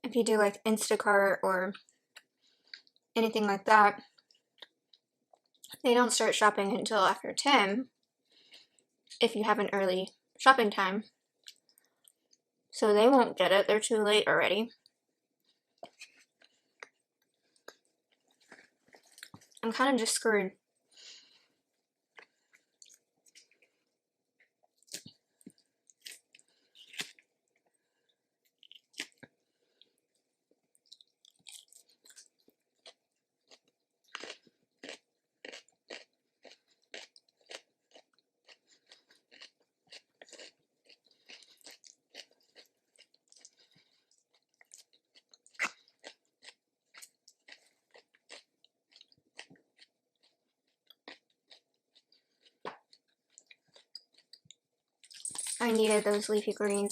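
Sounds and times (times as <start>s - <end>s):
chewing and crunching food: 0.5s - 5.9s, 7.8s - 10.4s, 11.0s - 12.6s, 14.7s - 56.9s.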